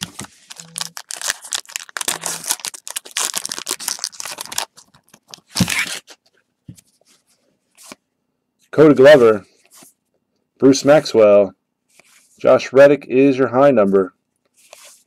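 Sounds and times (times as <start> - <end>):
wrapper tearing and crinkling: 0.0 - 6.2.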